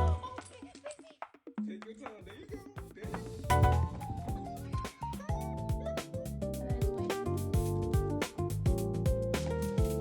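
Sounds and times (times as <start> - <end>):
held instrumental notes: 0.0 - 0.2, 3.3 - 10.0
regular drum hits: 0.0 - 10.0.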